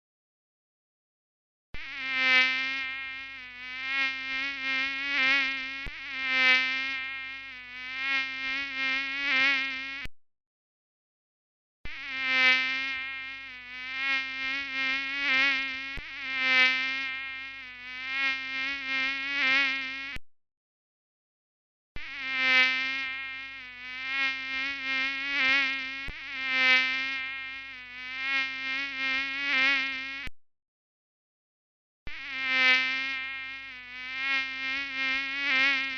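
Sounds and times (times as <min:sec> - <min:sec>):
mosquito whine: 0:01.8 - 0:10.1, 0:11.8 - 0:20.2, 0:22.0 - 0:30.3, 0:32.1 - 0:35.9
mosquito whining: 0:32.1 - 0:35.9.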